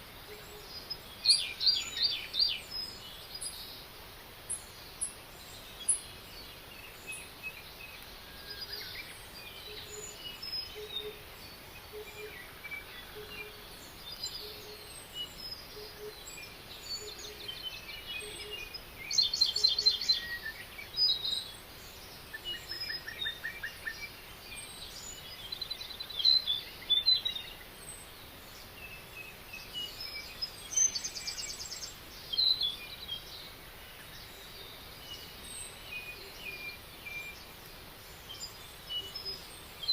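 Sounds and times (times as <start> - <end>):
steady hiss: 0.0 - 39.9
wild birds singing and calling: 0.0 - 39.9.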